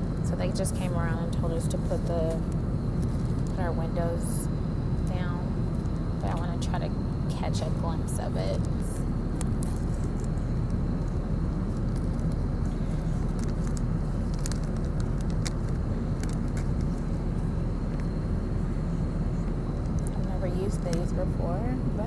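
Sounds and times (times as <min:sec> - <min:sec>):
airliner cabin rumble: 0:00.0 - 0:22.0.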